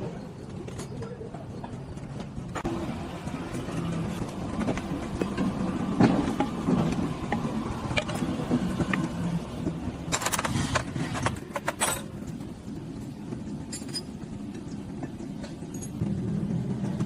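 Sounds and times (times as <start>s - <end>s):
light metallic clinks and rattles: 13.6s - 14.2s, 15.4s - 16.0s.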